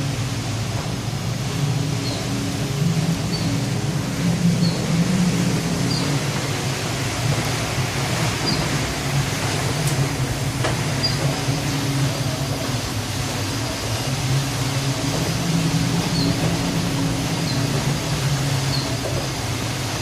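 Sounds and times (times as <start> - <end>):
ship engines humming: 0.0 - 20.0
wind and sea noise: 0.0 - 20.0.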